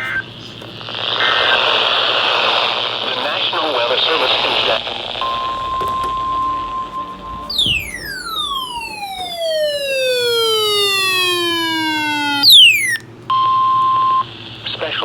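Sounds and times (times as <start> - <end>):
steady alarm tone: 4.4 - 14.2
siren-like tone sliding down: 4.8 - 13.0.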